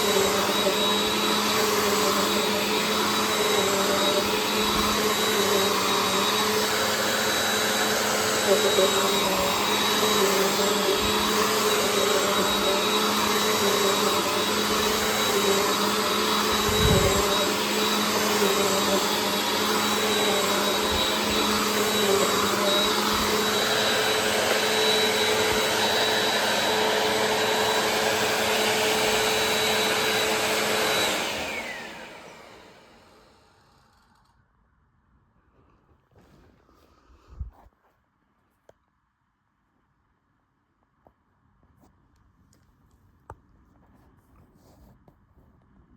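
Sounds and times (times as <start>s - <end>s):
vacuum cleaner motor whine: 0.0s - 34.3s.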